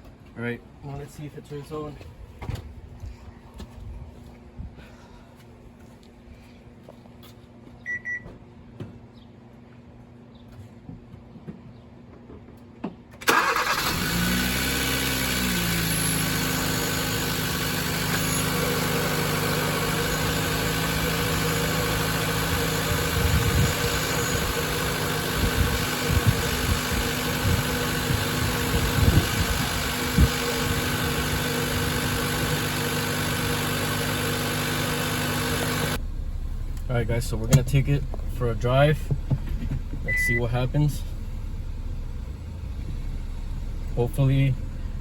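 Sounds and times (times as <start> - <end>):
car engine starting and idling: 13.2 - 45.0
engine knocks: 20.0 - 34.2, 35.3 - 45.0.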